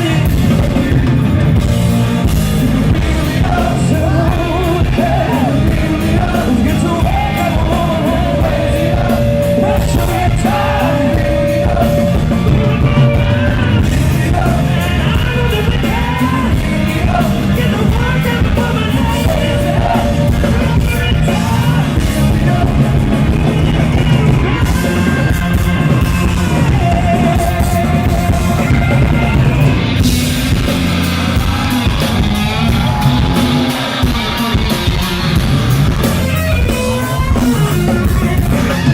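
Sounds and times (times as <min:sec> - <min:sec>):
lead vocalist singing: 0:00.0 - 0:35.3
live blues-rock band: 0:00.0 - 0:38.9.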